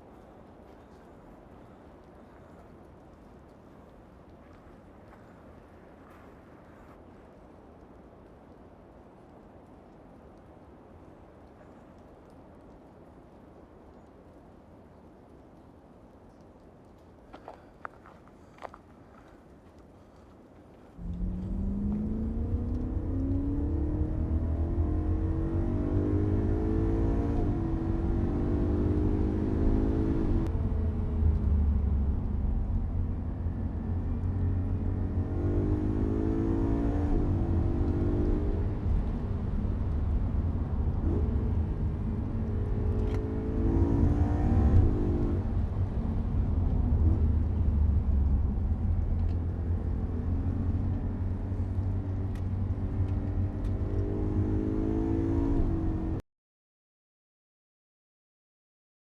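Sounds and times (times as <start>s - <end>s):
engine accelerating through gears: 21.0s - 56.2s.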